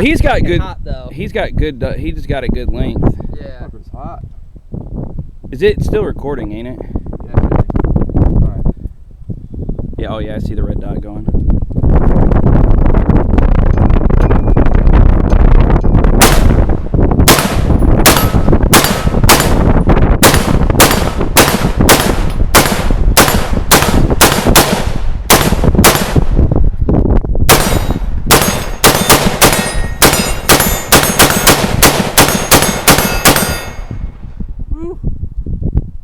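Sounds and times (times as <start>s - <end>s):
gunshots: 16.2s - 26.4s, 27.5s - 34.1s.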